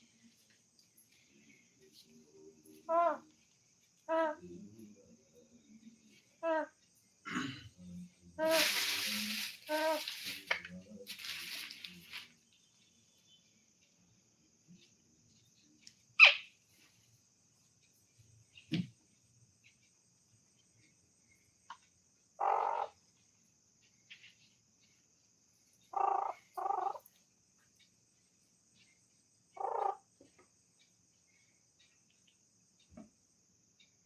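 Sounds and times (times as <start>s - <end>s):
parrot buzzy trills: 2.8s - 3.3s, 16.2s - 16.6s, 22.4s - 23.0s, 25.9s - 27.1s, 29.5s - 30.1s
parrot squawk: 16.2s - 16.5s, 22.4s - 22.9s, 25.9s - 27.0s, 29.6s - 30.0s.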